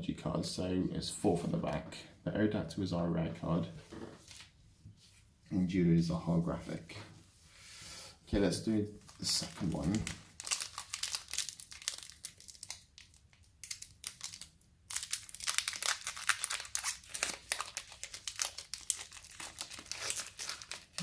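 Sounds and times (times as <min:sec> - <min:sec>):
foil wrapper crinkling: 0:09.0 - 0:21.0.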